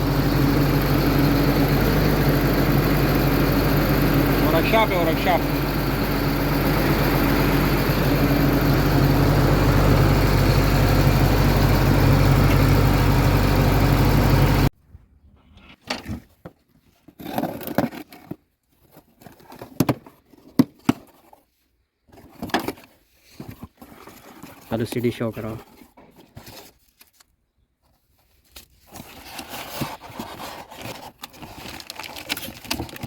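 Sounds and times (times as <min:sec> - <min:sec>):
diesel engine idling: 0:00.0 - 0:14.7.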